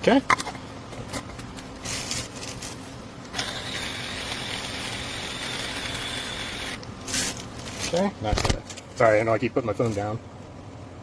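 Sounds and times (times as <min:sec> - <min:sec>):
handling rustle: 0:01.4 - 0:03.0, 0:07.0 - 0:09.1
coffee grinder whining: 0:03.3 - 0:06.8.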